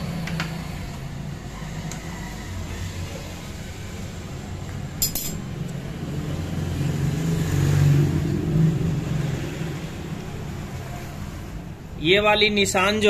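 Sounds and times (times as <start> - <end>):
sharp metal clink: 5.0 - 5.5.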